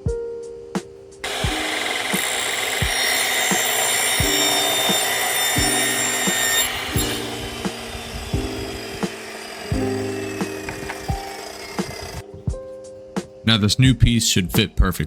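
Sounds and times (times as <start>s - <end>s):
power saw cutting wood: 1.2s - 12.2s.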